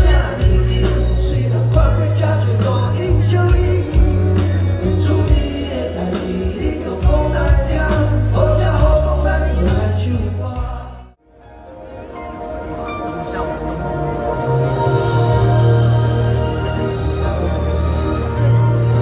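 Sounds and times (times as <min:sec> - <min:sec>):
person singing: 0:00.0 - 0:11.2
live pop-rock band music: 0:00.0 - 0:19.0.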